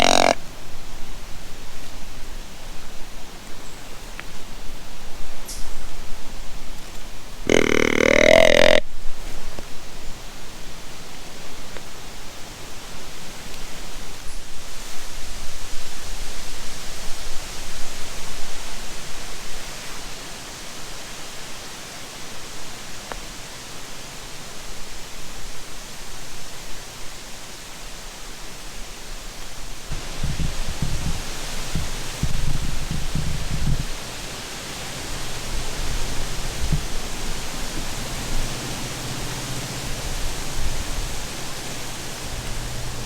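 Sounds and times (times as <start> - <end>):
steady rushing outdoor noise: 8.9 - 43.0.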